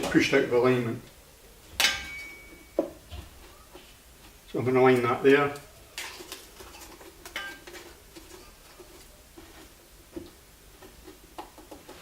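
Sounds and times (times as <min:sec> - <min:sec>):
wooden pieces tapping and knocking: 0:06.3 - 0:12.0.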